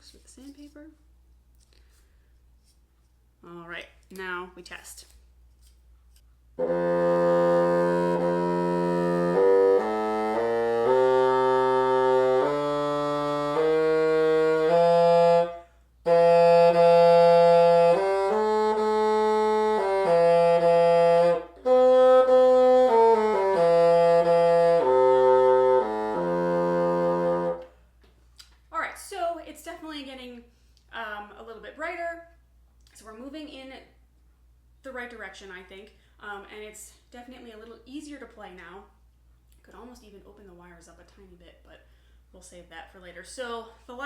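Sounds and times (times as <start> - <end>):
bassoon sustained notes: 6.6 - 27.7.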